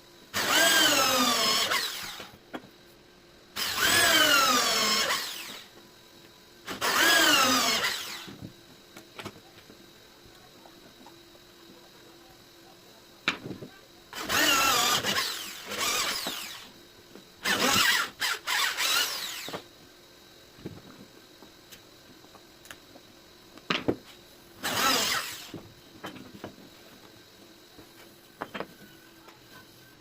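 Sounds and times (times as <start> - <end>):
power drill motor bursts: 0.3 - 2.4, 3.6 - 5.8, 6.6 - 8.4, 14.1 - 16.8, 17.4 - 19.7, 24.6 - 25.7
sharp drill clicks: 0.4 - 2.4, 3.6 - 5.8, 6.6 - 8.4, 14.1 - 16.8, 17.4 - 19.7, 24.6 - 25.6.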